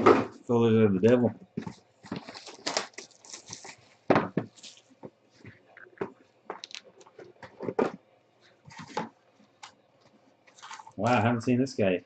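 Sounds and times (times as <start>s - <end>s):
cards and packaging rustling: 1.1s - 11.2s.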